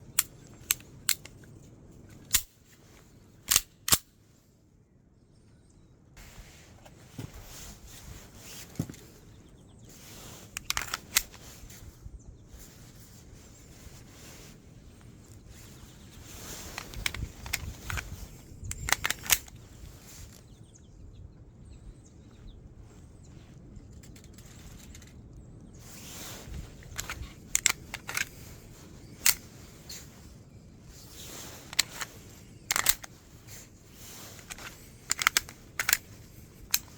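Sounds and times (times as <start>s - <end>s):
pistol mechanical clicks and snaps: 0.1s - 1.5s, 2.1s - 2.6s, 3.4s - 4.1s, 10.5s - 11.4s, 16.3s - 19.6s, 25.9s - 30.2s, 31.1s - 36.9s
quiet rustling: 6.2s - 20.7s, 22.3s - 36.9s.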